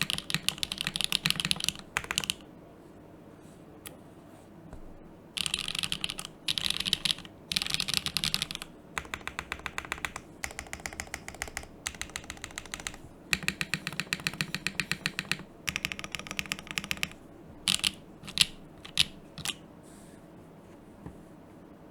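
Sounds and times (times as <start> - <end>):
mechanical keyboard typing: 0.0 - 2.4, 5.4 - 19.6.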